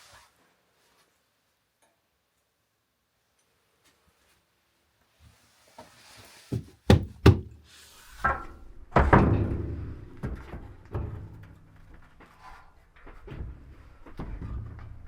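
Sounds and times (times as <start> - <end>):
sharp knocks and thuds: 6.5 - 7.6, 8.2 - 12.3.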